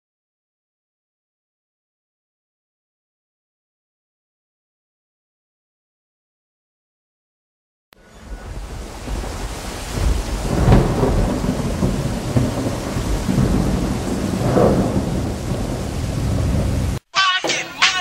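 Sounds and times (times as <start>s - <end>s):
rain: 8.0s - 17.0s
rolling thunder: 8.0s - 17.0s.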